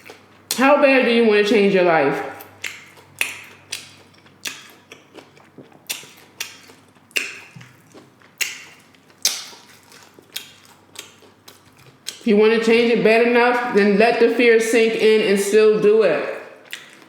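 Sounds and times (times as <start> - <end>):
chewing crunchy chips: 2.4 - 12.3, 16.4 - 17.0.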